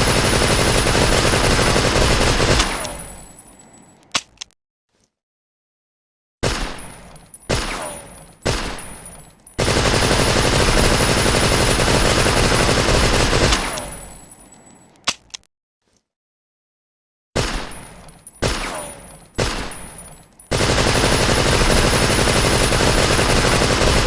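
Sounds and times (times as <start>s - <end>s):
submachine gun firing: 0.0s - 3.2s, 9.6s - 14.0s, 18.4s - 19.9s, 20.5s - 24.0s.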